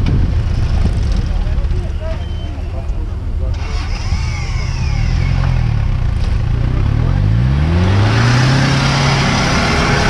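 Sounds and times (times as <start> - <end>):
vehicle engine revving: 3.3 - 10.0
loud rushing noise: 7.8 - 10.0.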